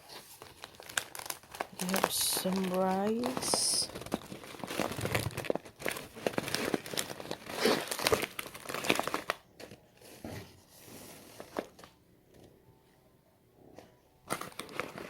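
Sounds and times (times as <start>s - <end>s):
packaging crinkling and rustling: 0.0s - 12.4s, 14.2s - 15.0s.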